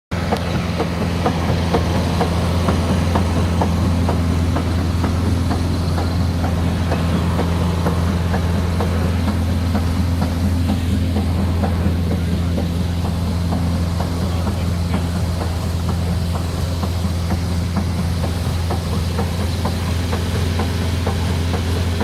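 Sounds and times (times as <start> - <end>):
truck engine humming: 0.1 - 22.0.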